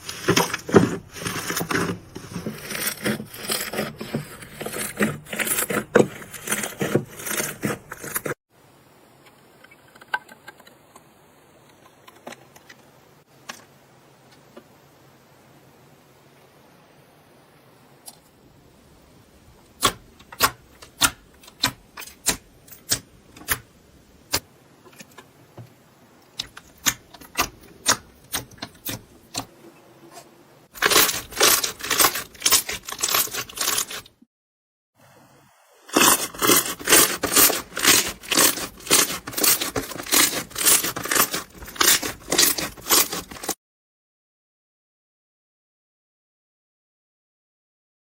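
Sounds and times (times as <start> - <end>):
crunchy slime crackling: 0.0 - 8.4, 30.8 - 34.1, 35.9 - 43.6.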